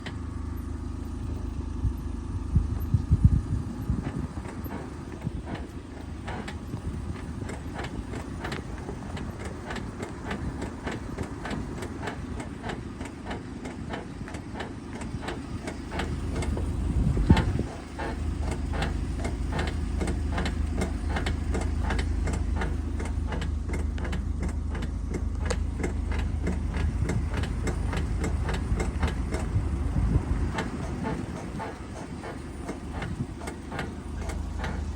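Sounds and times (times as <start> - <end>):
car rapid regular clicking: 0.0 - 34.9
low rumble: 1.2 - 8.5.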